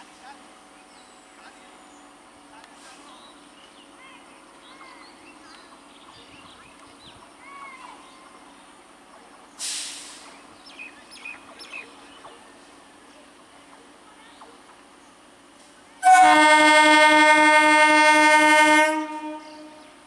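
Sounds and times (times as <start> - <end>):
loud hiss: 9.6 - 10.4.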